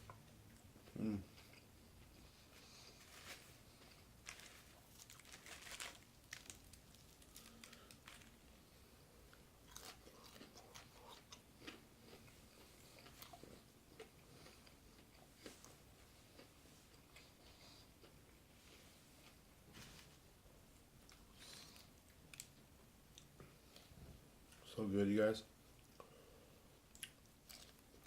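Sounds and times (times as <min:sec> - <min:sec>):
person chewing with crunches: 0:00.0 - 0:08.6, 0:09.2 - 0:18.5, 0:26.8 - 0:28.0.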